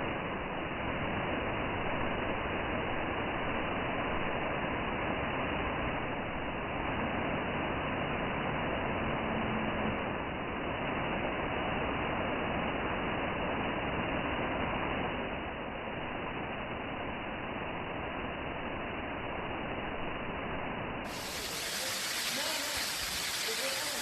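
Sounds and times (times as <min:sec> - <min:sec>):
waterfall rushing: 0:21.0 - 0:24.0.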